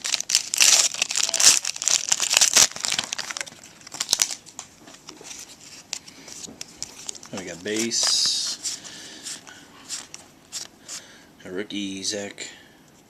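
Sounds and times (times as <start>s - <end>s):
plastic wrapper tearing and crinkling: 0.0s - 10.7s.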